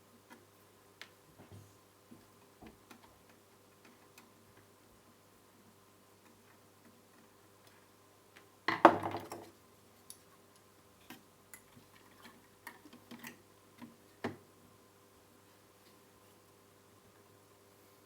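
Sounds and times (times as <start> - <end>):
light clicks and taps: 1.0 - 4.8.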